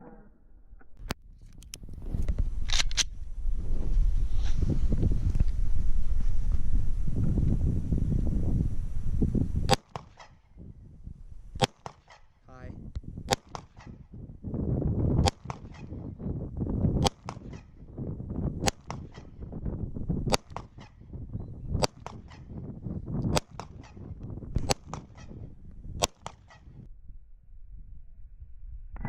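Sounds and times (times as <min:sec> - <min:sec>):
low rumble: 0:00.0 - 0:09.8, 0:10.5 - 0:11.6, 0:12.5 - 0:15.3, 0:15.9 - 0:17.1, 0:17.7 - 0:20.4, 0:26.7 - 0:29.0.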